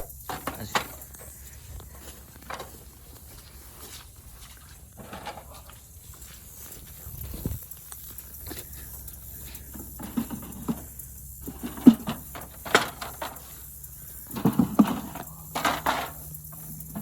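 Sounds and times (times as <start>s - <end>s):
wooden frames knocking and scraping: 3.9s - 5.9s, 9.8s - 13.7s, 14.3s - 17.0s.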